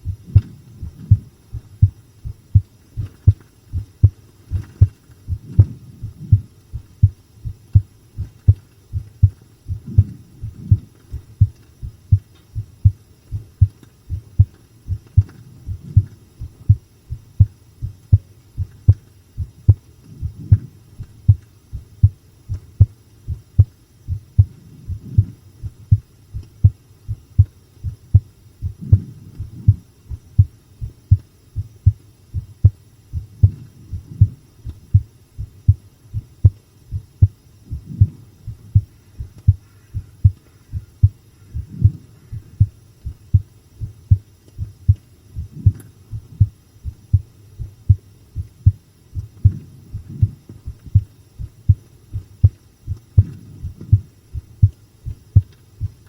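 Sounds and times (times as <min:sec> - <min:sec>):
heartbeat thumps: 0:00.0 - 0:56.0
low hum: 0:00.0 - 0:56.0.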